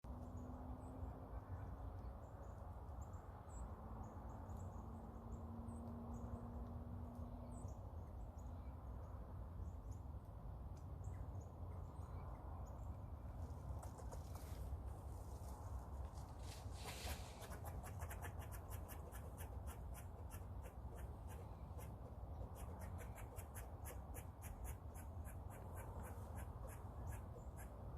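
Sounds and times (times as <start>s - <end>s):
crackling rustles: 13.4s - 20.4s.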